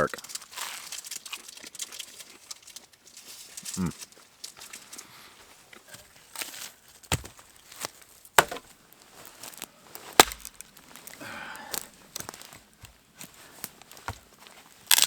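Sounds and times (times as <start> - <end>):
axe chopping firewood: 6.4 - 8.8, 9.4 - 13.0, 13.6 - 14.3
light wood knocks: 8.4 - 8.7.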